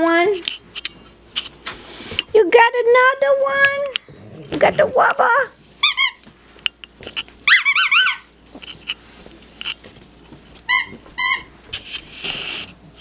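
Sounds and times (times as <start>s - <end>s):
squeaky toy squeaking: 5.8s - 6.2s, 7.4s - 8.2s, 10.7s - 11.5s.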